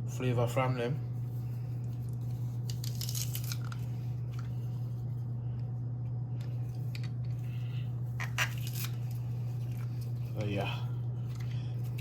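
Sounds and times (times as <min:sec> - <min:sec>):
steady low hum: 0:00.0 - 0:12.0
vegetables crunching and squishing: 0:01.8 - 0:04.6, 0:08.2 - 0:10.6.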